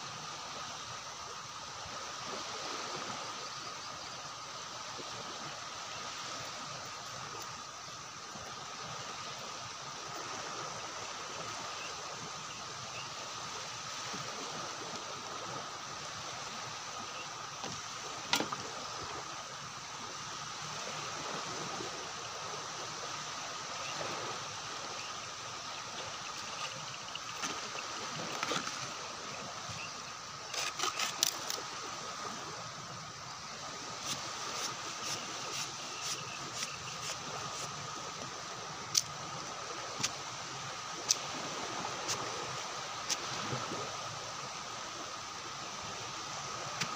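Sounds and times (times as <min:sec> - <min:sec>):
rushing water hiss: 0:00.0 - 0:46.9.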